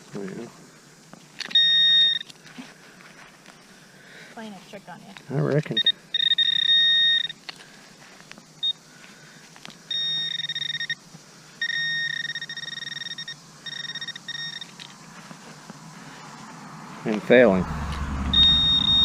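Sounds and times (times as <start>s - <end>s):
metal detector tone bursts: 1.4s - 2.3s, 5.7s - 7.4s, 9.9s - 11.0s, 11.6s - 14.7s, 17.7s - 19.0s.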